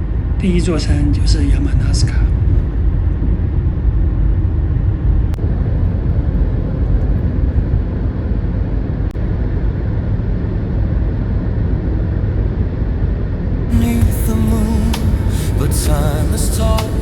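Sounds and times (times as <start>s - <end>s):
road and engine rumble inside car: 1.4s - 9.4s, 13.7s - 17.0s.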